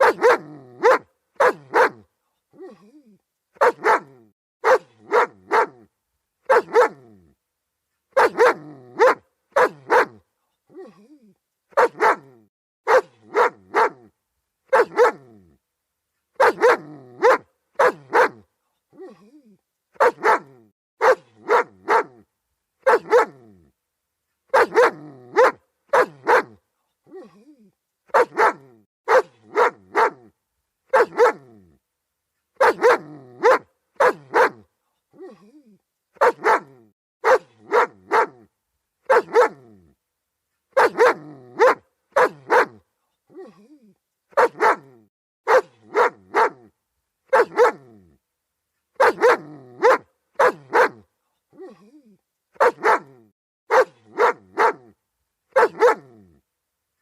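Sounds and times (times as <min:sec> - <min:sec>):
dog barking: 0:00.0 - 0:02.7, 0:03.6 - 0:07.1, 0:08.1 - 0:10.2, 0:11.7 - 0:14.1, 0:14.7 - 0:15.3, 0:16.4 - 0:19.1, 0:20.0 - 0:23.5, 0:24.5 - 0:27.3, 0:28.1 - 0:30.3, 0:30.9 - 0:31.6, 0:32.6 - 0:35.4, 0:36.2 - 0:39.7, 0:40.7 - 0:42.8, 0:44.3 - 0:46.7, 0:47.3 - 0:47.9, 0:49.0 - 0:51.8, 0:52.6 - 0:56.2.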